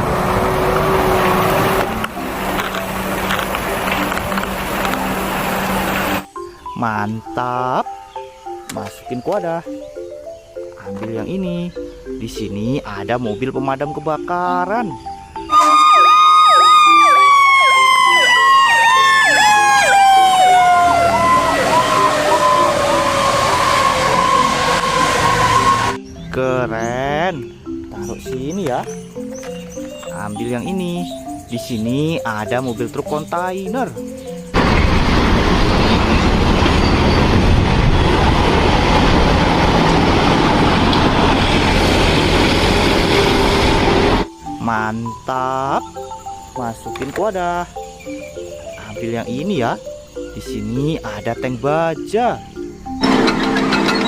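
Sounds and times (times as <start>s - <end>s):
rumbling rattling vehicle noise: 0.0s - 6.3s, 17.3s - 26.8s, 27.7s - 44.4s, 52.7s - 54.0s
fire engine siren: 15.5s - 26.0s, 34.6s - 44.3s, 53.0s - 54.0s.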